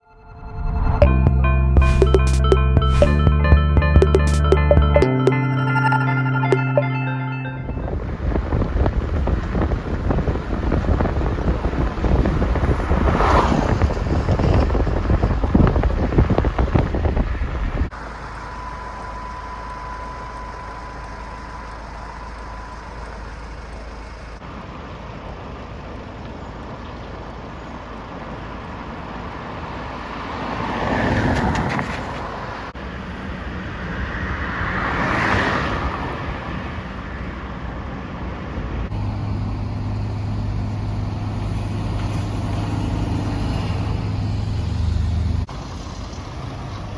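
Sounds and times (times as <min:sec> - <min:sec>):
vehicles passing: 0:00.1 - 0:46.9
wind buffeting microphone: 0:07.8 - 0:17.9
faint steady tone: 0:17.9 - 0:26.7
outdoor hum: 0:17.9 - 0:29.4.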